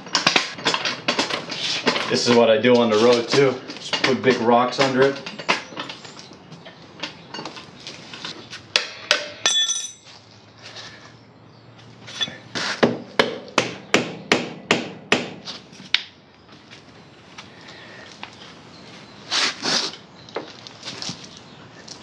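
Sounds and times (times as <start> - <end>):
short metallic ring: 9.2 - 10.2, 12.1 - 12.4.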